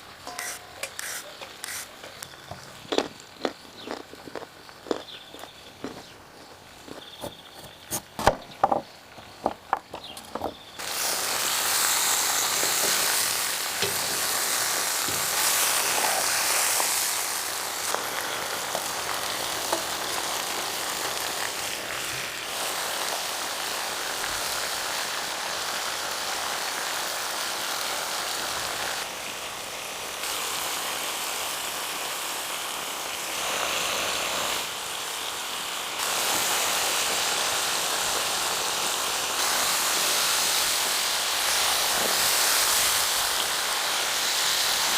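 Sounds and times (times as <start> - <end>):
food sizzling in a cauldron: 0.0 - 8.2, 10.5 - 44.9
campfire crackles: 0.0 - 10.0, 10.7 - 44.9.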